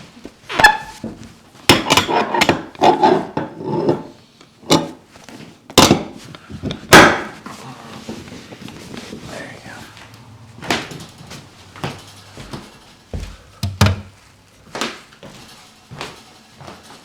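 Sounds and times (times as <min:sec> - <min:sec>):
sharp knocks and cracks: 0:05.7 - 0:07.4, 0:10.6 - 0:15.0
rubbing and shuffling: 0:07.4 - 0:17.0.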